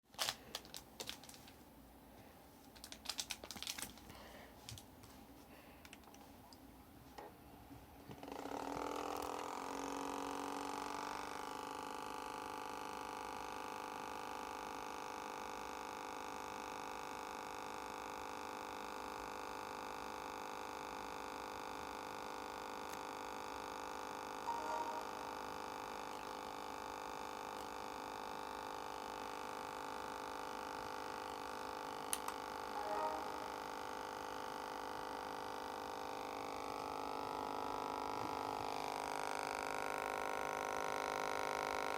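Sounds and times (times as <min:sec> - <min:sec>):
fans whining hum: 0:00.1 - 0:14.1, 0:22.4 - 0:41.9
fan humming: 0:32.2 - 0:35.0.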